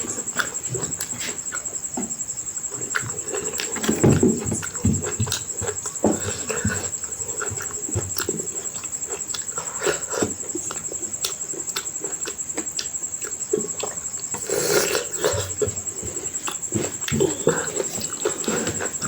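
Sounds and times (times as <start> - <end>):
wet chewing and mouth smacks: 4.6 - 15.4.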